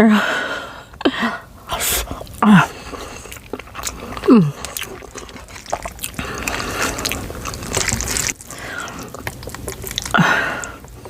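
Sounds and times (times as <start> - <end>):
wet slurping and chewing noodles: 1.7 - 11.0.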